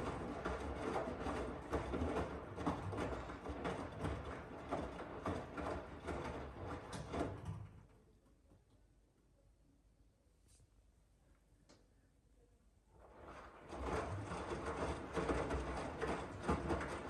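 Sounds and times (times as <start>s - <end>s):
laundry tumbling knocks and swishes: 0.0s - 7.6s, 13.0s - 17.0s
washing machine drum turning: 0.0s - 7.7s, 13.2s - 17.0s.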